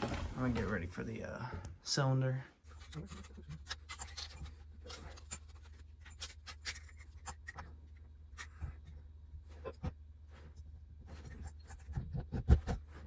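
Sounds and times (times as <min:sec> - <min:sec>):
clicks and scrapes of tools: 0:02.8 - 0:07.7.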